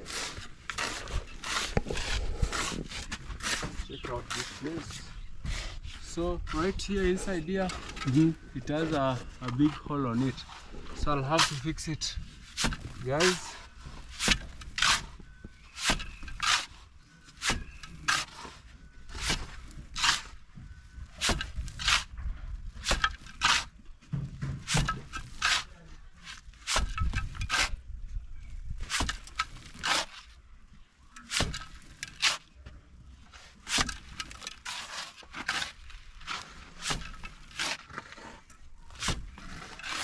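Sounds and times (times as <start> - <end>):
steel trowel scraping mortar: 0.0 - 20.4, 24.7 - 27.8, 33.3 - 40.0.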